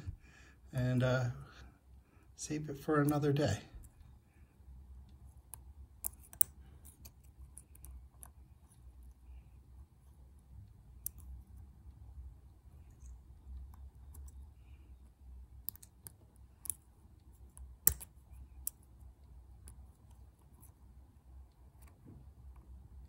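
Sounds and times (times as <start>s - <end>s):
lock-picking tools clicking: 17.5s - 18.8s.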